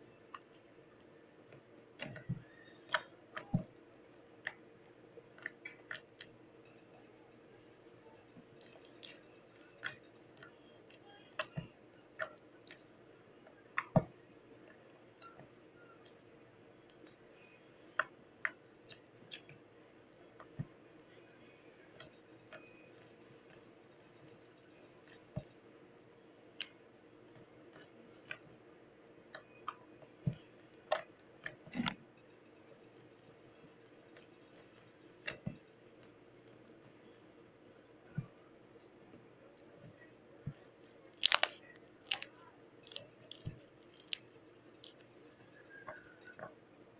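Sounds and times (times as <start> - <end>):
sticky clicks and pops: 40.4 - 45.0
slime squished by hand: 41.1 - 42.4.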